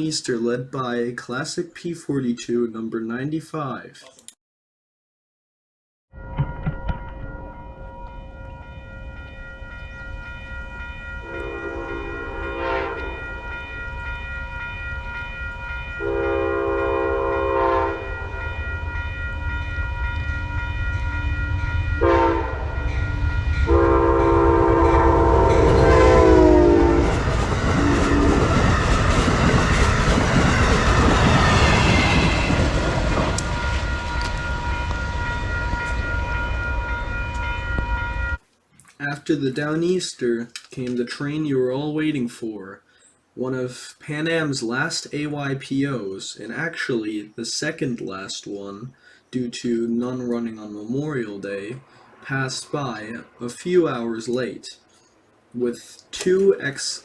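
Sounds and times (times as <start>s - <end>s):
train rumbling by: 7.0s - 38.4s, 50.6s - 54.2s
locomotive horn blasts: 11.2s - 13.5s, 16.0s - 18.4s, 22.0s - 28.7s, 51.8s - 54.1s.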